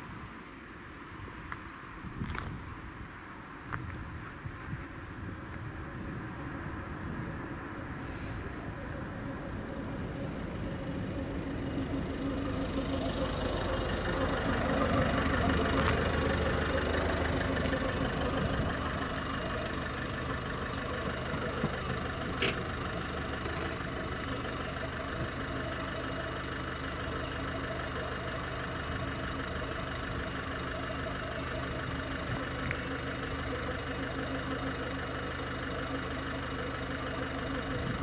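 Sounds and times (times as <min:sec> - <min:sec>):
engine idling: 0:03.7 - 0:38.0.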